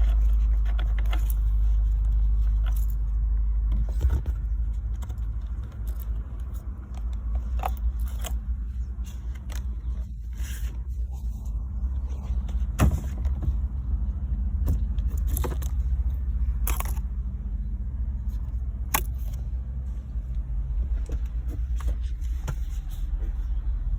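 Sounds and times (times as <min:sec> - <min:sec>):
clicks and rattles of parts handled: 0:00.0 - 0:11.4, 0:14.6 - 0:17.3, 0:18.2 - 0:19.5
steady low rumble: 0:00.0 - 0:23.9.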